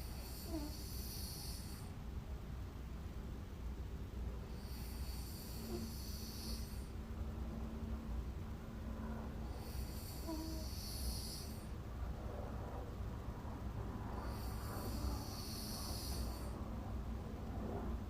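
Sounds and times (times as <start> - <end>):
woman snoring: 0.0 - 1.9, 4.5 - 6.9, 9.5 - 11.7, 14.2 - 16.5
steady low hum: 0.0 - 18.0.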